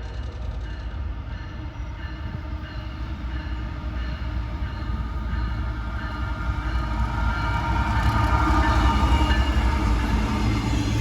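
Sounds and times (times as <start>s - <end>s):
freight train locomotives rumbling: 0.0s - 11.0s.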